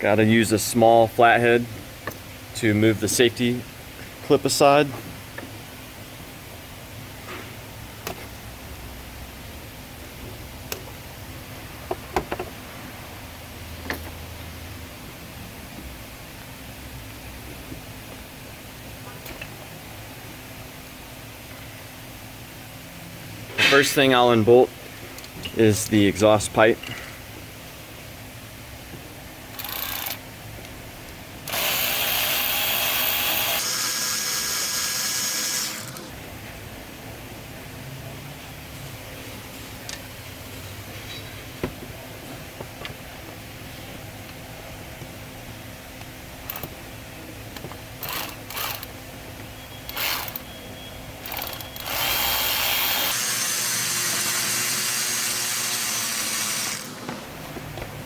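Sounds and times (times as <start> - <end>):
power driver whining: 29.6 - 30.2, 31.4 - 36.2, 46.5 - 46.8, 48.0 - 48.9, 49.8 - 50.5, 51.2 - 57.4
power driver unscrewing bolts: 46.5 - 46.8.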